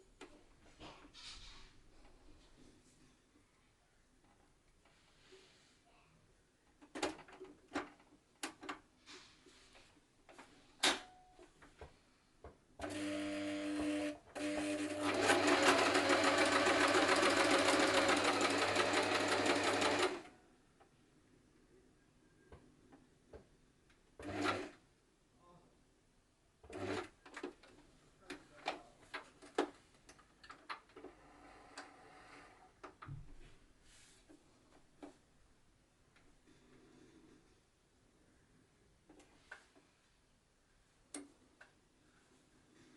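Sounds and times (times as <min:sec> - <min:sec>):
sewing machine running: 0:12.8 - 0:20.3, 0:24.2 - 0:24.7.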